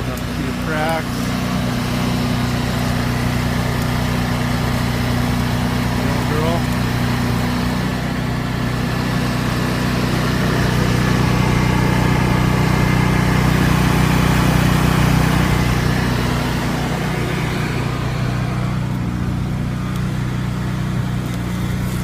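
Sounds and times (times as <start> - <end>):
engine running steadily: 0.0 - 22.0.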